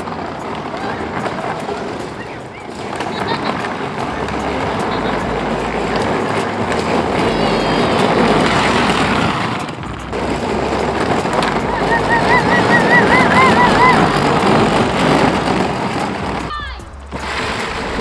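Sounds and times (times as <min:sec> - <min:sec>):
ride-on toy rolling rumble: 0:00.0 - 0:18.0
wavering high-pitched tone: 0:11.3 - 0:15.8.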